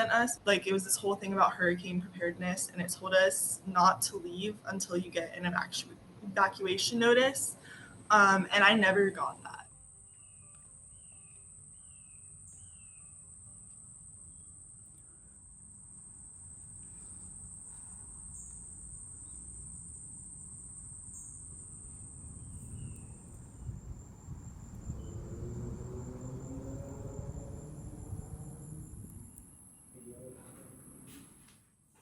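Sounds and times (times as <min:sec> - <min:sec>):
insects trilling: 0:06.9 - 0:31.2
low rumble: 0:22.3 - 0:30.4.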